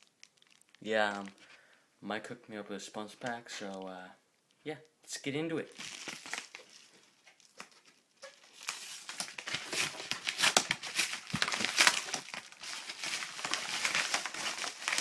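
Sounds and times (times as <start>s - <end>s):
packaging crinkling and tearing: 0.0s - 1.5s, 5.7s - 15.0s.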